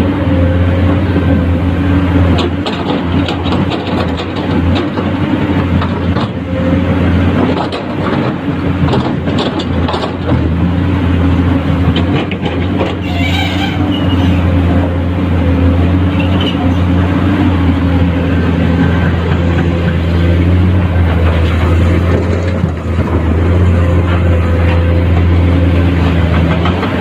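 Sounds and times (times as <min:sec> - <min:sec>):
excavator diesel engine running: 0:00.0 - 0:27.0
knocks and clatter: 0:02.3 - 0:06.5, 0:07.3 - 0:10.6, 0:11.8 - 0:13.0, 0:19.0 - 0:27.0
high squeal: 0:13.0 - 0:14.5.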